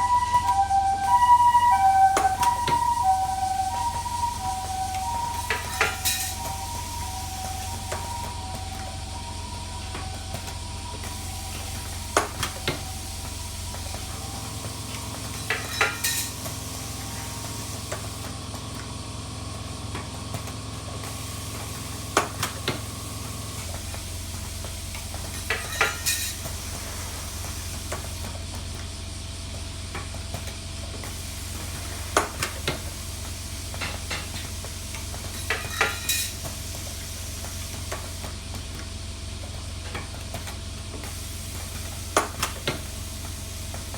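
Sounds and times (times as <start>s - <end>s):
machine humming: 0.0s - 19.7s.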